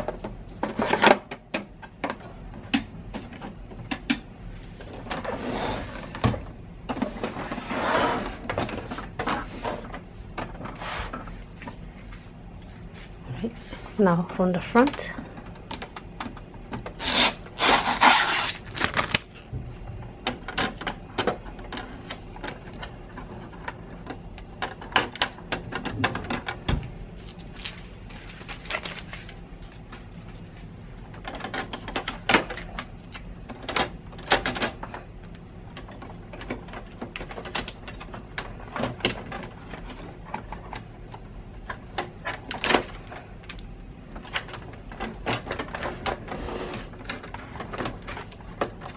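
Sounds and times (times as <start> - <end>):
tape being peeled off: 17.0 - 19.3
rustling: 27.2 - 30.5.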